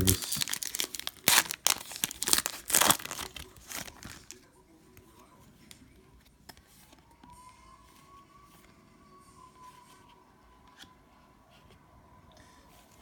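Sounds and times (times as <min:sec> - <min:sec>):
cellophane wrapper crinkling: 0:00.0 - 0:04.4
faint handling sounds: 0:00.0 - 0:13.0.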